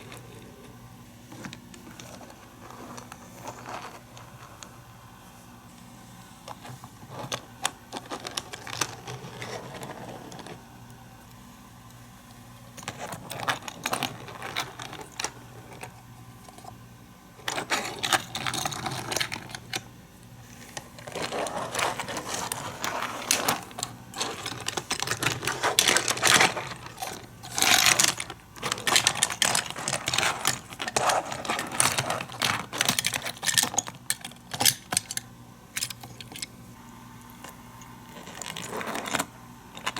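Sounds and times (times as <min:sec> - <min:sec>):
toy cars rattling on plastic track: 0:07.1 - 0:10.6, 0:21.0 - 0:35.2.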